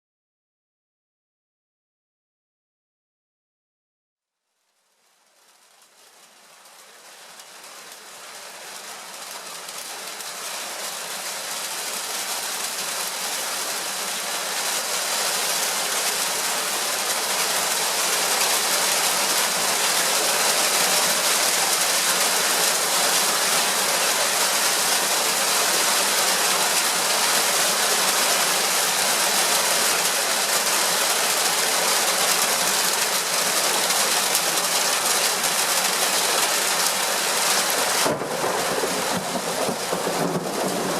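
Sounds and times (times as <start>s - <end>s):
heavy rain falling: 4.9s - 40.9s.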